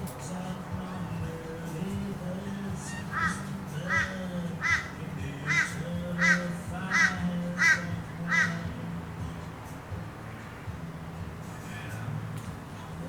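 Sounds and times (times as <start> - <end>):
bird calling: 2.5 - 8.7.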